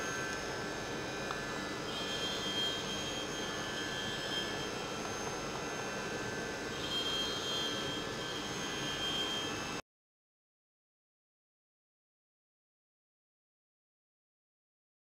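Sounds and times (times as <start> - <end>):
high machine whine: 0.0 - 9.8
milling machine humming: 0.0 - 9.8.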